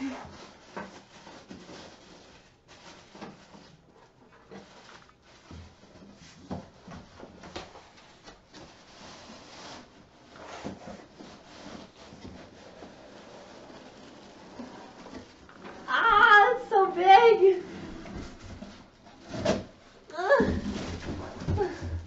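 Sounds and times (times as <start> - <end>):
cardboard rubbing and scraping: 0.0 - 3.8, 4.4 - 16.5, 17.6 - 22.0.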